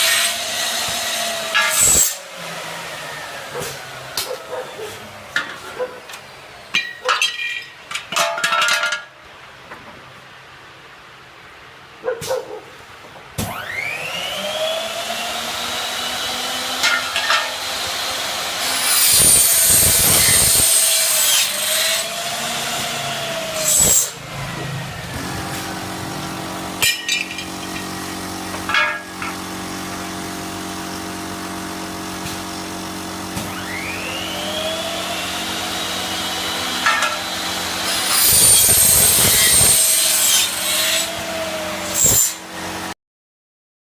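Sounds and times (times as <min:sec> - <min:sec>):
saw blade screeching through metal: 0:00.0 - 0:02.3, 0:15.8 - 0:28.1, 0:33.6 - 0:42.5
saw motor whining: 0:00.0 - 0:05.3, 0:13.5 - 0:42.9.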